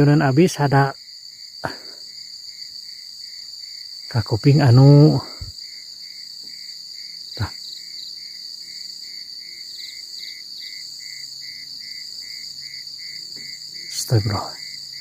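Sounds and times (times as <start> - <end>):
crickets chirring in high trills: 0.0 - 15.0
pulsing insect call: 0.0 - 15.0.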